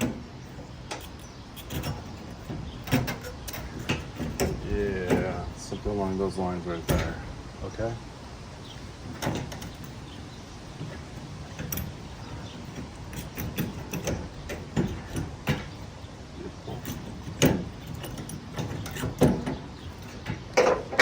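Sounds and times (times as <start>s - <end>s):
tools and parts clicking and knocking: 0.0s - 5.4s, 9.0s - 21.0s.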